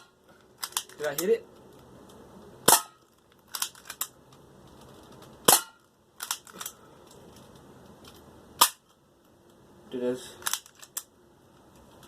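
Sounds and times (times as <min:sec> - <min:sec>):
pistol shot crack: 0:02.7 - 0:03.0, 0:05.5 - 0:05.8.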